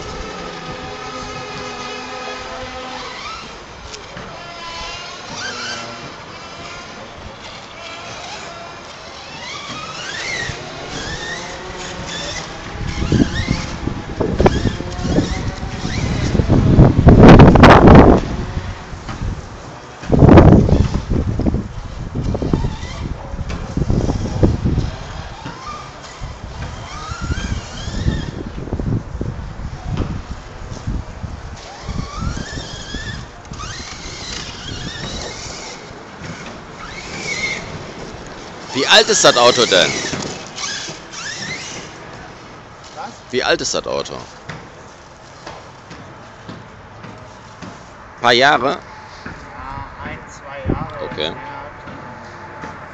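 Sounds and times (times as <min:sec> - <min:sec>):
rc car motor whining: 0:00.0 - 0:19.0, 0:20.0 - 0:28.8, 0:31.5 - 0:42.2
wind buffeting microphone: 0:00.0 - 0:45.2, 0:48.0 - 0:52.9.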